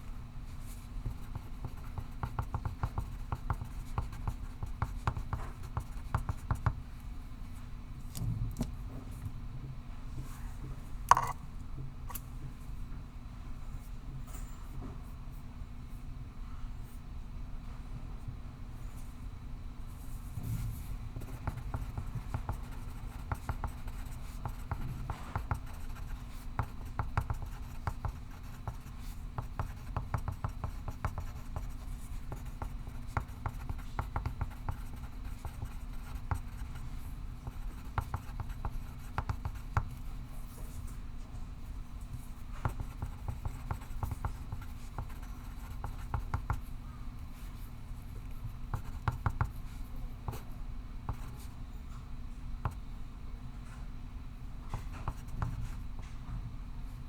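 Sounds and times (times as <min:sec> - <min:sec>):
pencil scratching on paper: 0:01.1 - 0:06.6, 0:21.2 - 0:36.8, 0:37.5 - 0:40.0, 0:42.6 - 0:46.7, 0:48.7 - 0:49.7.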